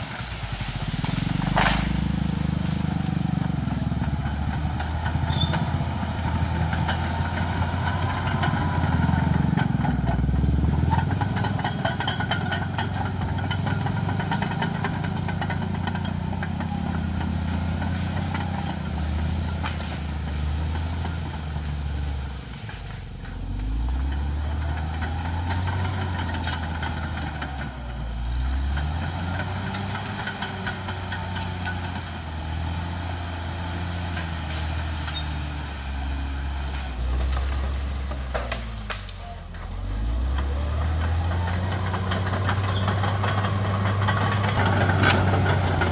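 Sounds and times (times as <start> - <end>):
bulldozer diesel engine under load: 0.0 - 45.9
sharp cracks and clatter: 0.2 - 3.8, 36.6 - 39.2.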